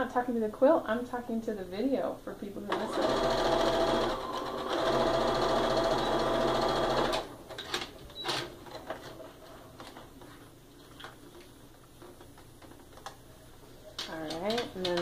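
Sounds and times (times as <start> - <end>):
sewing machine stitching: 2.7 - 7.3.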